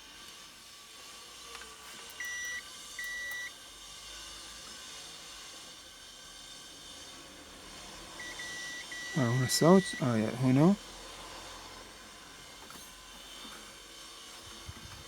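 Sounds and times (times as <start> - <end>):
multimeter buzzer beeping: 2.1 - 3.5, 8.2 - 10.5.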